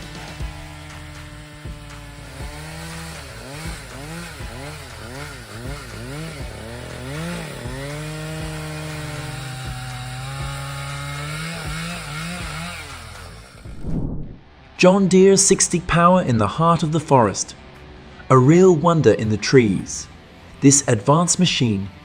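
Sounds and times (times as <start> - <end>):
chainsaw cutting into tree trunk: 0.0 - 13.9.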